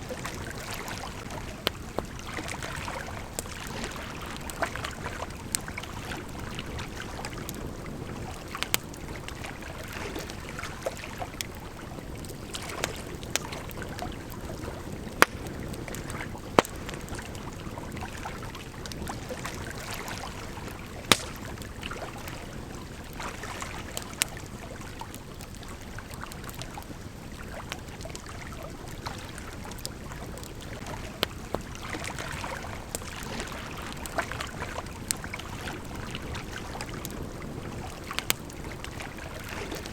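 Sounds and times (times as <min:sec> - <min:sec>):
river flowing: 0:00.0 - 0:25.0
campfire crackling and popping: 0:00.0 - 0:39.9.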